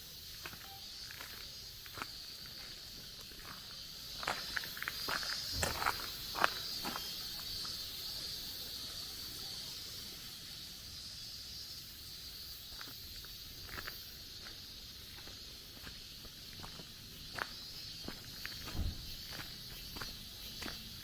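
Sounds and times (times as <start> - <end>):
high-pitched insect drone: 0.0 - 21.0
footsteps: 0.4 - 7.8, 12.7 - 20.9.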